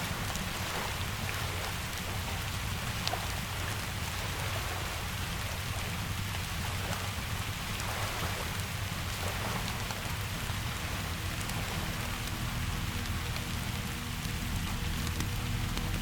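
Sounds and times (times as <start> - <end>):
steady rain falling: 0.0 - 16.0
wood fire crackling and popping: 12.1 - 16.0.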